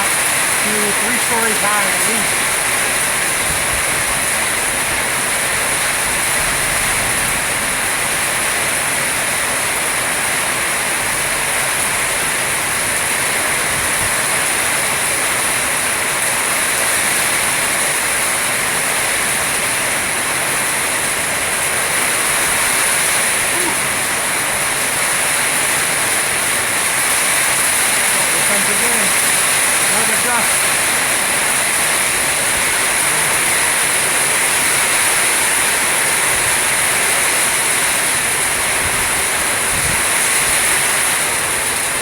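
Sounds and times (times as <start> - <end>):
heavy rain pouring: 0.0 - 42.0
strong wind: 38.2 - 41.8.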